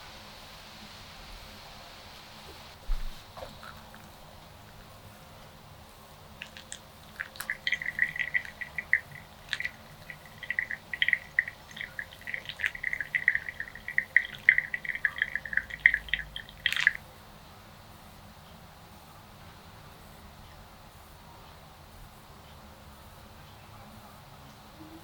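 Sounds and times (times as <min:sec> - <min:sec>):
liquid pouring: 0:02.9 - 0:17.0.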